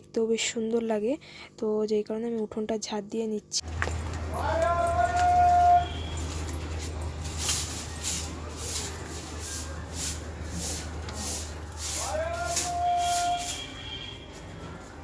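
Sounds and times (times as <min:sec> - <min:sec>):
broom sweeping concrete: 0:05.3 - 0:15.0.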